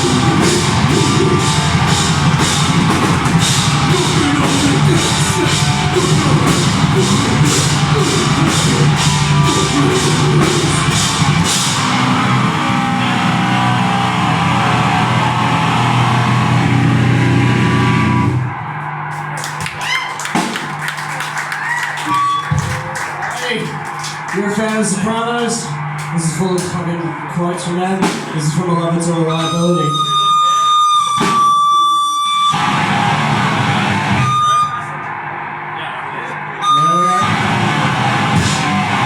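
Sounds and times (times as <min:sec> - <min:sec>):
pounding drum beat: 0:00.0 - 0:17.2, 0:19.6 - 0:21.1, 0:28.0 - 0:28.6
distorted guitar and bass: 0:00.0 - 0:19.1, 0:24.3 - 0:39.0.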